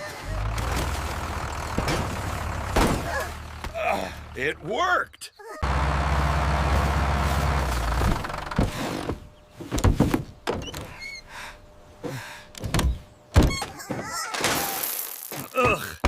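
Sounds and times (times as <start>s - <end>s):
tractor engine droning: 0.0s - 5.0s, 5.6s - 13.6s
thunks and knocks: 1.7s - 3.8s, 7.9s - 10.9s, 12.6s - 14.6s.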